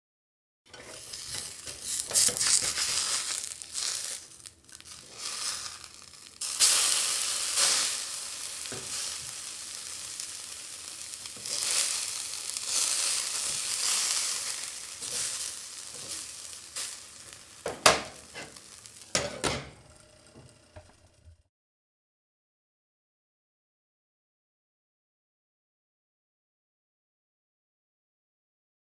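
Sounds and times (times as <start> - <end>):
burger patties sizzling: 0.7 - 21.2.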